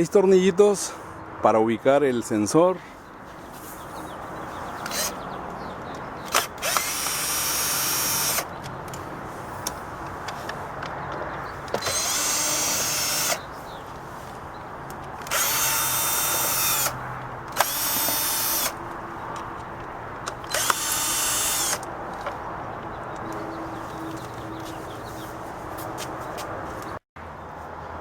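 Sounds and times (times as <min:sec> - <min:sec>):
electric drill-driver running: 0:04.8 - 0:05.2, 0:06.3 - 0:08.5, 0:11.7 - 0:13.5, 0:15.2 - 0:21.9.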